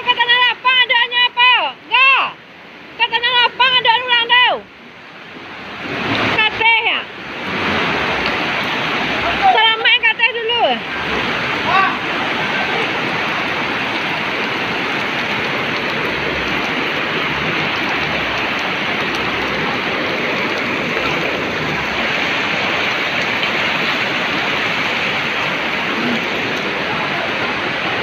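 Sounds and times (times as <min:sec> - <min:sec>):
river rushing: 0:00.0 - 0:28.0.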